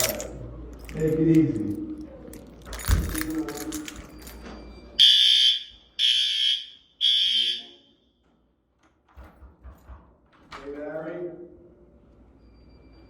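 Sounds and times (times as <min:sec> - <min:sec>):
fire alarm high-pitched beeps: 0:04.4 - 0:08.2.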